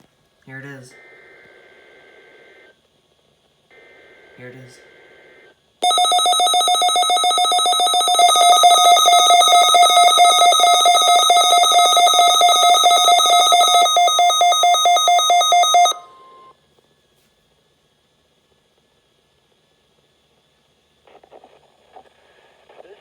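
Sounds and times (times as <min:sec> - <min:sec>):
pulsing electronic alarm tone: 0:05.8 - 0:16.5.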